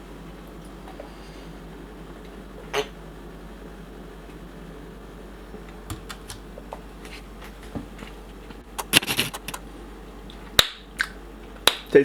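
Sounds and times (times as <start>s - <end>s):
low room hum: 0.0s - 12.0s
mouth and lip clicks: 8.8s - 9.6s, 10.6s - 11.9s.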